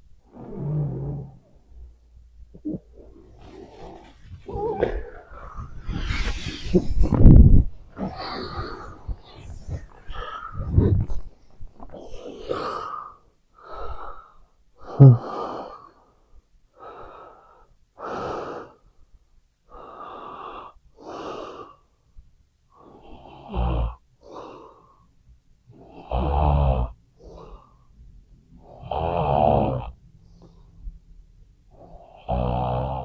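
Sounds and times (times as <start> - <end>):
person snoring: 2.6 - 13.0.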